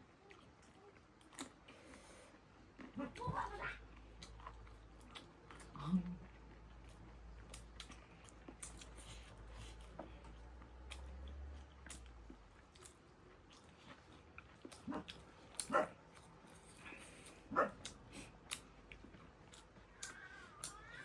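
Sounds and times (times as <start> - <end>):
chewing clicks and smacks: 0.2 - 20.9
dog barking: 14.9 - 16.0, 17.5 - 17.9.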